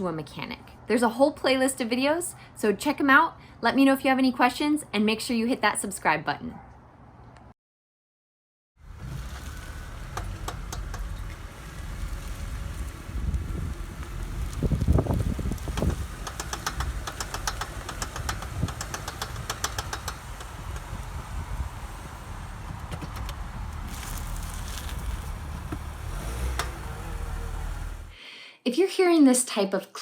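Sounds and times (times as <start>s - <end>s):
road and engine rumble: 8.8s - 28.2s
rapid clicking from car: 9.1s - 28.1s.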